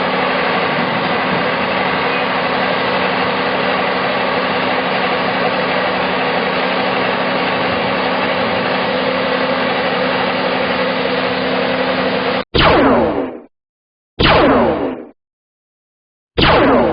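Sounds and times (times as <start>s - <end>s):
construction machinery droning: 0.0s - 12.4s.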